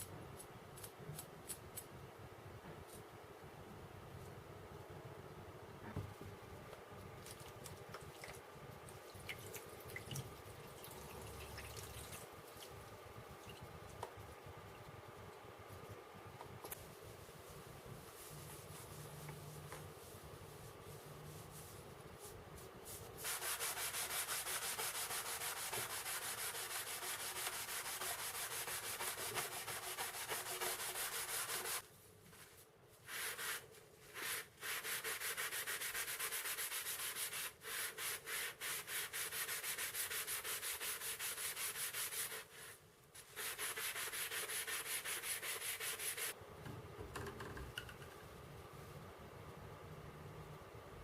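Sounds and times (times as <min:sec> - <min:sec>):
sandpaper rubbing on metal: 0:23.2 - 0:31.8, 0:33.1 - 0:46.4.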